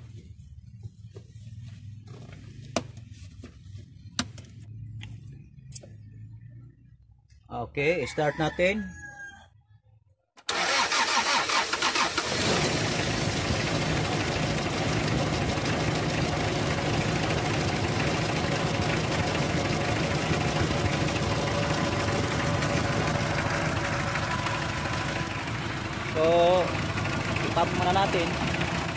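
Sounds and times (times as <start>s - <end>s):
diesel engine running: 0.0s - 7.2s, 10.5s - 28.9s
starter motor cranking: 10.5s - 14.0s.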